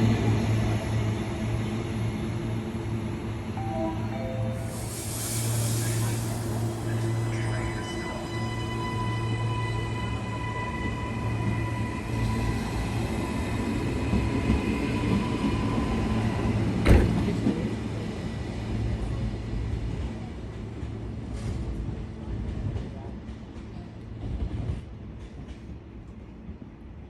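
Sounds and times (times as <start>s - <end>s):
train high whine: 0.0s - 19.8s
electric train hum: 0.0s - 25.6s.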